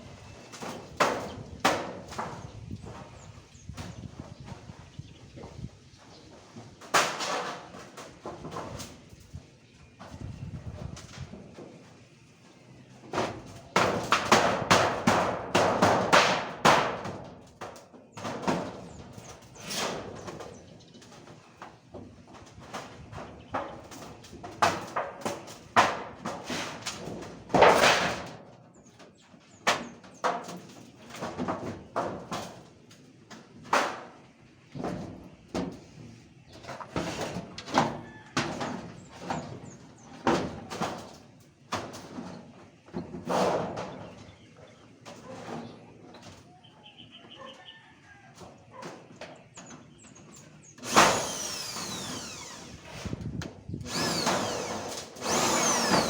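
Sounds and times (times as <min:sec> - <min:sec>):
construction knocks and clatter: 0:00.0 - 0:46.6, 0:47.3 - 0:56.0
power drill running: 0:50.8 - 0:53.2, 0:53.8 - 0:56.0.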